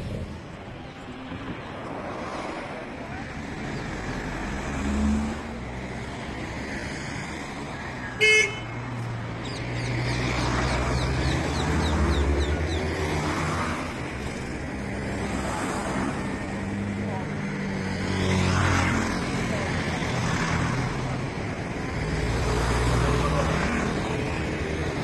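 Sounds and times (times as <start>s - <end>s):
street traffic: 0.0s - 25.0s
car horn toot: 8.2s - 8.8s.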